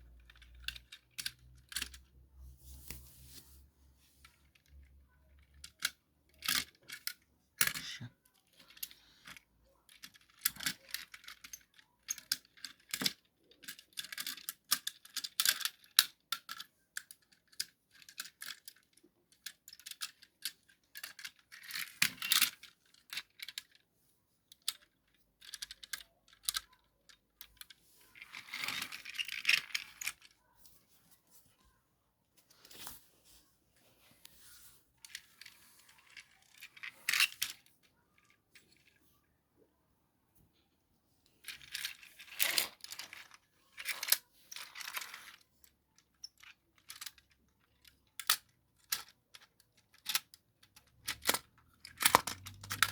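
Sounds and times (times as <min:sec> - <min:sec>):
toy tram clicking and rattling: 0:00.0 - 0:02.1, 0:04.3 - 0:23.8, 0:24.5 - 0:30.5, 0:35.0 - 0:39.2, 0:41.4 - 0:52.9
rustling: 0:32.3 - 0:37.8.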